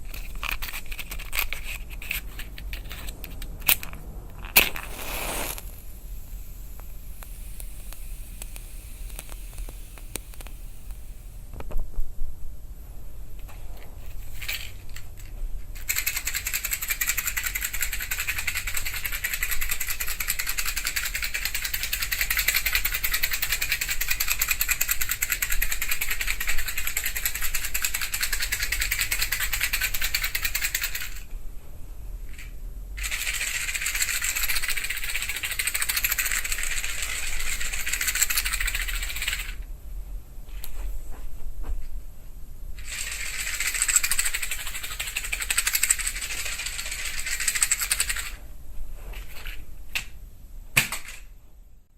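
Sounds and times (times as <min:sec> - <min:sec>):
matches rattling in a matchbox: 0:00.0 - 0:05.6, 0:14.3 - 0:31.2, 0:33.0 - 0:39.6, 0:42.8 - 0:48.4.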